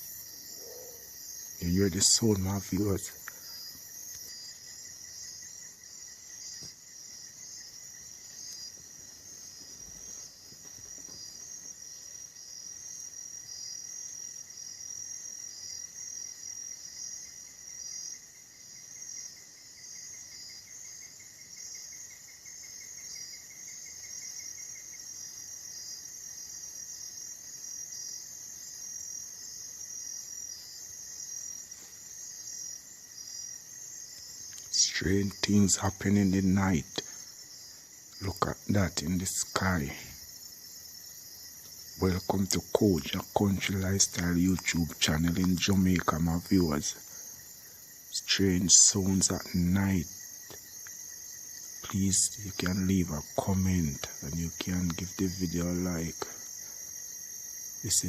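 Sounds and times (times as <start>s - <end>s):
insects shrilling: 0.0s - 14.1s, 27.7s - 58.0s
lower insect trill: 0.0s - 58.0s.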